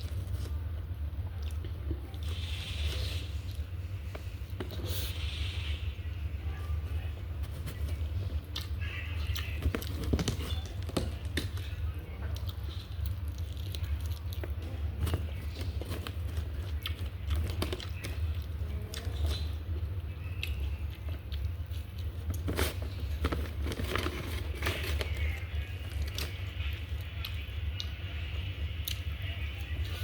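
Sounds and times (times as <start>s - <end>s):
steady low hum: 0.0s - 30.0s
person chewing food: 7.5s - 28.0s.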